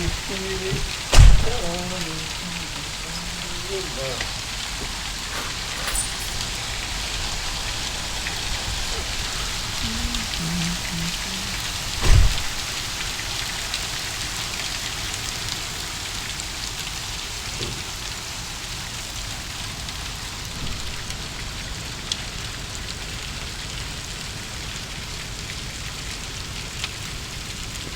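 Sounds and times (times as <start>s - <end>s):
ice rain pattering: 0.0s - 27.9s
low thump: 1.1s - 1.6s, 12.0s - 12.6s.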